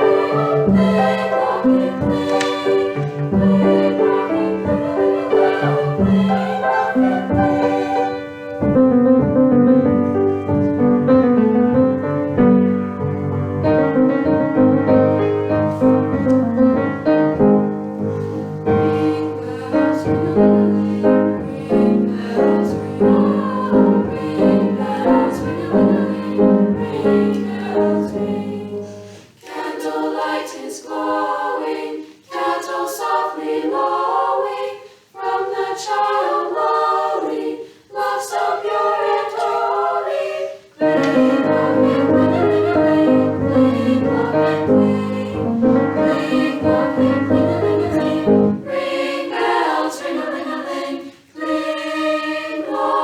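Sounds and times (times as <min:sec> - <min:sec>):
instrumental accompaniment: 0:00.0 - 0:29.4, 0:40.8 - 0:49.7
women's choir singing a carol: 0:00.0 - 0:53.0.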